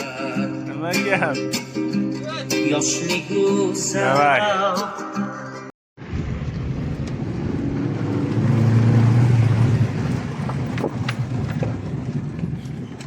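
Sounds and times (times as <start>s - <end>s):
vehicle engine humming: 6.0s - 13.0s.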